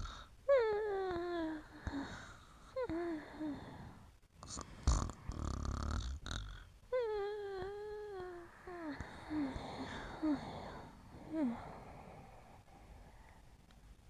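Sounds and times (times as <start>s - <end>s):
dog snoring: 4.4s - 6.7s.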